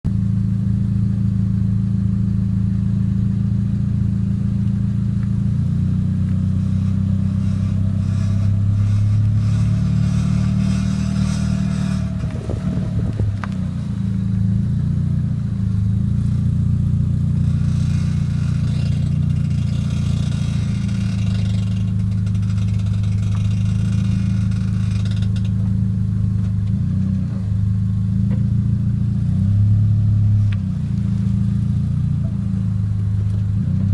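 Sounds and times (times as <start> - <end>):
car engine running: 0.0 - 33.9
wheel creaking and grinding: 6.1 - 27.5, 30.2 - 33.9.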